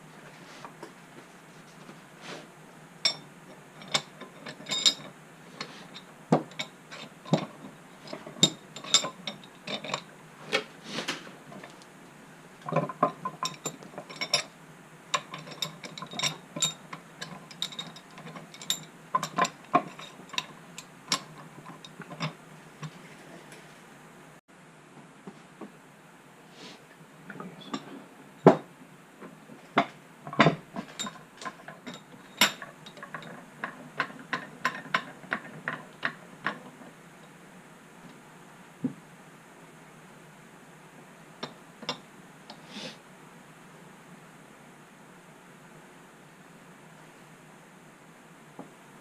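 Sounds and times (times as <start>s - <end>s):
metal parts clinking and knocking: 3.1s - 10.1s, 12.6s - 14.5s, 15.1s - 23.0s, 29.8s - 36.7s.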